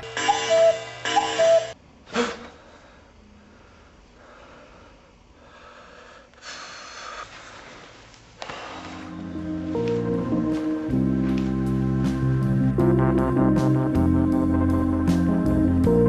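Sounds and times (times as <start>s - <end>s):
cuckoo clock calling: 0.0s - 1.8s.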